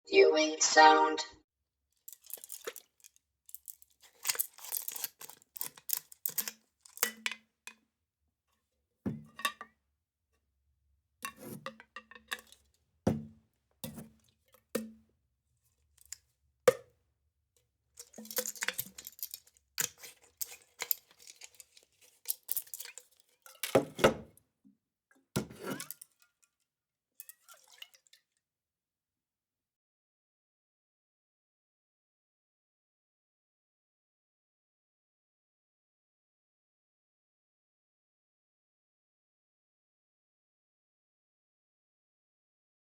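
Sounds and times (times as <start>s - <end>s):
liquid sloshing in metal flask: 2.1s - 2.9s, 3.6s - 7.4s, 18.0s - 24.0s, 25.4s - 26.1s, 27.2s - 28.2s.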